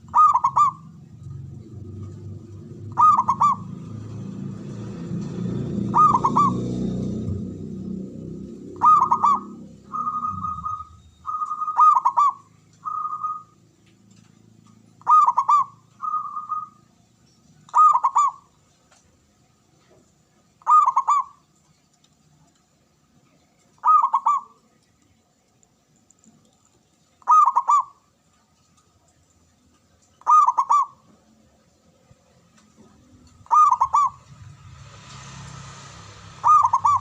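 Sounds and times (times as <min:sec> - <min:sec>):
dove cooing: 0:00.0 - 0:04.0, 0:05.6 - 0:13.6, 0:15.0 - 0:16.8, 0:17.7 - 0:18.5, 0:20.6 - 0:21.5, 0:23.8 - 0:24.7, 0:27.2 - 0:28.0, 0:30.2 - 0:31.2, 0:32.9 - 0:34.4, 0:36.4 - 0:37.0.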